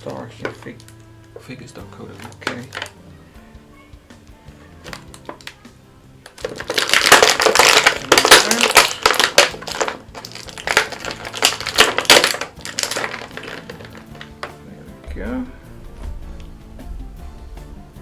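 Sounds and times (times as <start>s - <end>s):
plastic packaging crinkling: 2.1s - 3.0s, 4.8s - 5.6s, 6.2s - 14.4s.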